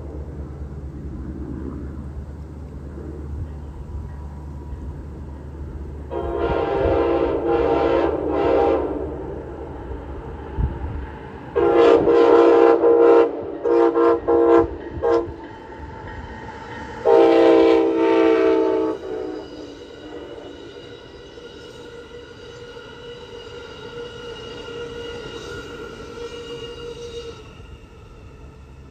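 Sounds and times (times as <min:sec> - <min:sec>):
train air horn blasts: 0:06.1 - 0:10.0, 0:10.6 - 0:15.8, 0:17.0 - 0:28.6.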